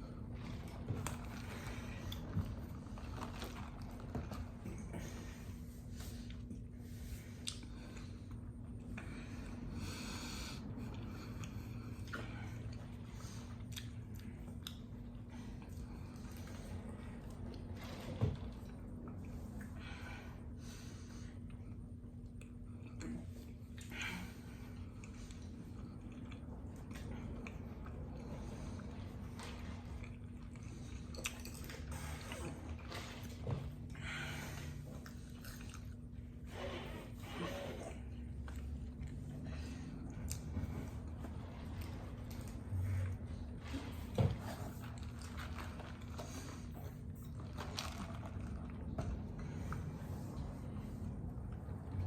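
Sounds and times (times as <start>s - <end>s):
close-up chewing: 0.1s - 9.1s, 10.8s - 19.8s, 21.3s - 37.0s.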